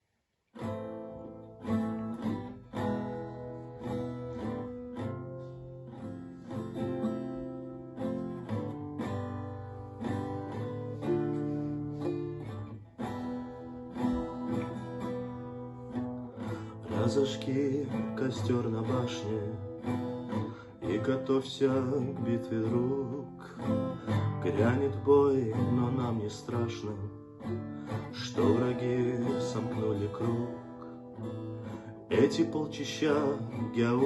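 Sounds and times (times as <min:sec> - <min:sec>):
acoustic guitar chords: 0:00.5 - 0:34.0.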